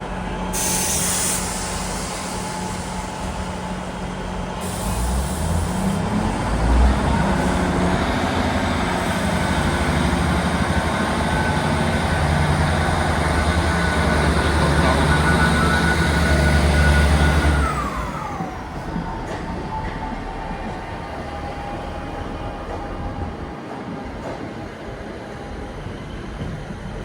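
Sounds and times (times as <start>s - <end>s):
train diesel engines running: 0.0s - 27.0s
air hiss: 0.6s - 3.2s.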